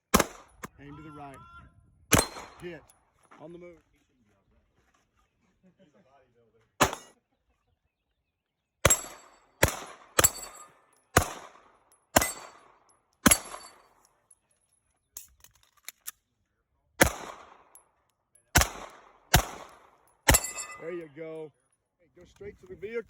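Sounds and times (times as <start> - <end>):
gunshots cracking: 6.8 - 7.1, 8.9 - 10.6, 11.2 - 11.6, 17.0 - 17.7, 18.6 - 20.7.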